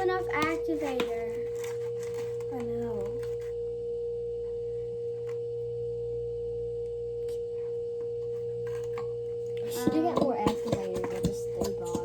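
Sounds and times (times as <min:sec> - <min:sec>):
low hum: 0:00.0 - 0:12.0
single-pitch whine: 0:00.0 - 0:12.0.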